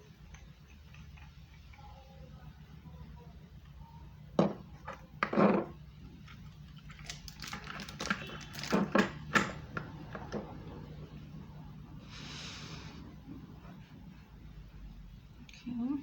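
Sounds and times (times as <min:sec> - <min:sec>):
tools knocking on work surface: 0:04.4 - 0:05.7.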